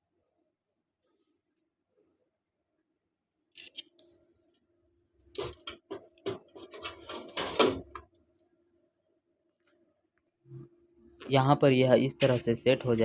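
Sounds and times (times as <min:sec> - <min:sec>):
rubbing and clicks: 0:05.3 - 0:08.0.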